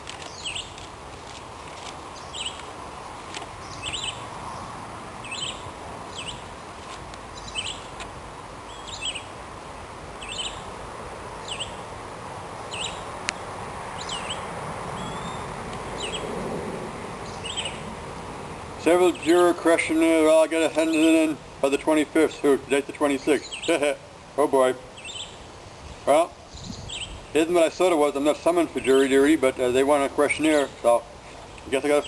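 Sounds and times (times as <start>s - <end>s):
background noise: 0.0s - 32.0s
small bird chirping: 0.2s - 0.8s, 2.1s - 2.6s, 3.6s - 6.5s, 7.3s - 8.0s, 8.7s - 9.3s, 10.2s - 10.7s, 11.4s - 11.8s, 12.7s - 13.0s, 14.0s - 14.4s, 16.0s - 16.3s, 17.2s - 17.9s, 23.2s - 23.8s, 25.0s - 25.9s, 26.5s - 27.3s.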